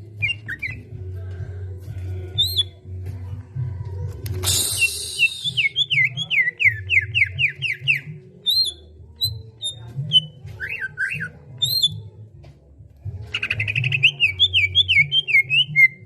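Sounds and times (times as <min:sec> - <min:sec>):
low pulsing backing: 0:00.0 - 0:15.1
bird whistling song: 0:02.3 - 0:02.8, 0:04.4 - 0:12.0, 0:13.3 - 0:16.0.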